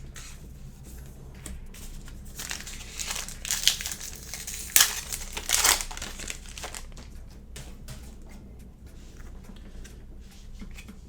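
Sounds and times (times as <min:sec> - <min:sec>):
wrapper crinkling and tearing: 0:02.2 - 0:07.1.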